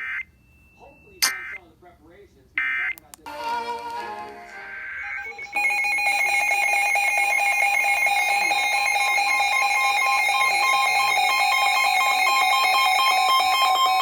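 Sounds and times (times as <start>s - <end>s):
harsh two-tone alarm: 4.6s - 14.0s.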